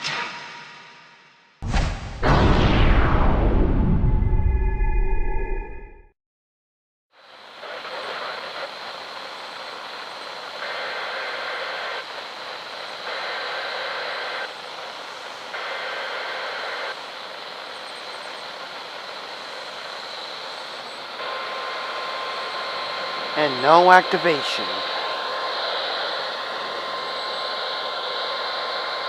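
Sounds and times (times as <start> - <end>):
radio static hiss: 7.2 - 29.0
data bursts: 20.7 - 29.0.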